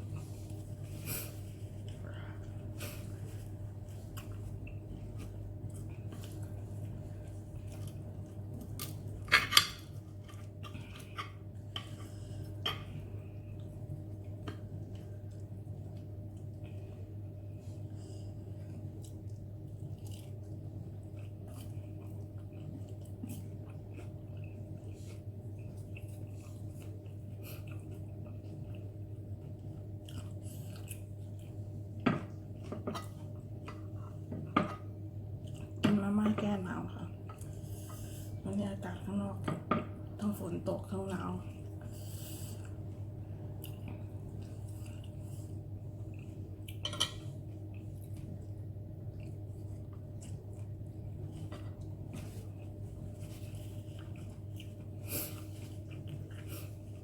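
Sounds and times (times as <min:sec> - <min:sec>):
wet chewing sounds: 0:00.0 - 0:34.6, 0:41.4 - 0:57.0
steady low hum: 0:00.0 - 0:57.0
cutlery clinking against bowl: 0:46.8 - 0:47.3.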